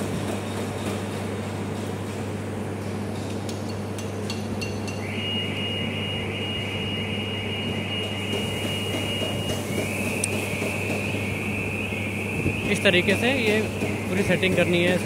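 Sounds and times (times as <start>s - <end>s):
faint high whine: 4.8s - 15.0s.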